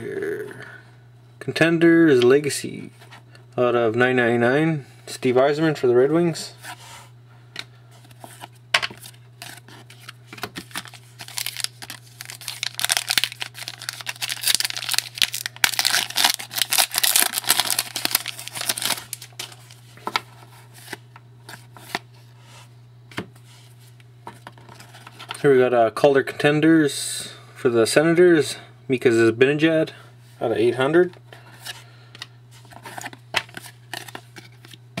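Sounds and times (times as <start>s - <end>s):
cards shuffling and sliding: 8.0s - 25.4s, 32.5s - 34.8s
foil wrapper tearing and crinkling: 9.0s - 19.8s.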